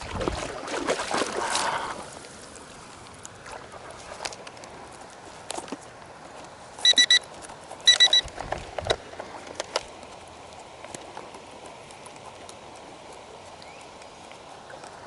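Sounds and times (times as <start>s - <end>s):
low steady hiss: 0.0s - 15.0s
quick high electronic beeps: 6.8s - 7.2s, 7.9s - 8.2s.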